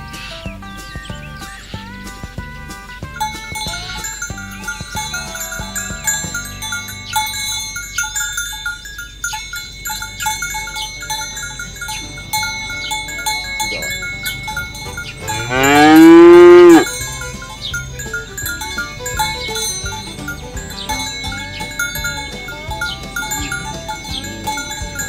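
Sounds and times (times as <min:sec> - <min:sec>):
background music with chiming notes: 0:00.2 - 0:25.0
cow mooing: 0:15.2 - 0:16.9.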